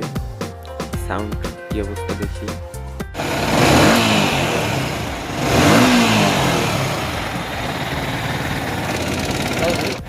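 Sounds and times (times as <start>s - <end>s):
motorcycle engine revving: 3.1s - 10.0s.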